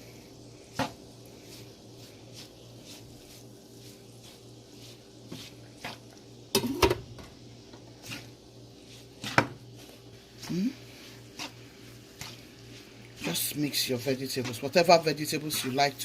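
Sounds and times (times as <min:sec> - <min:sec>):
steady low hum: 0:00.0 - 0:16.0
utensil scraping a pan: 0:08.0 - 0:16.0.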